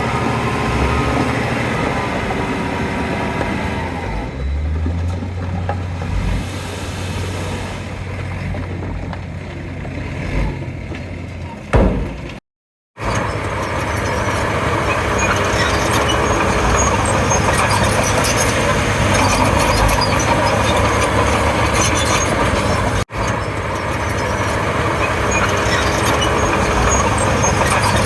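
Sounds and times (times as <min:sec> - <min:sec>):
bulldozer diesel engine under load: 0:00.0 - 0:12.4, 0:13.0 - 0:28.0.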